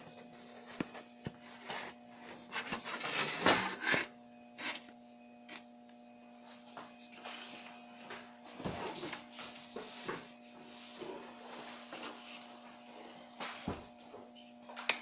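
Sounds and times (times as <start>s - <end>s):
low electrical hum: 0.0s - 15.0s
rubbing and scraping handling noise: 0.2s - 4.9s, 7.1s - 13.4s.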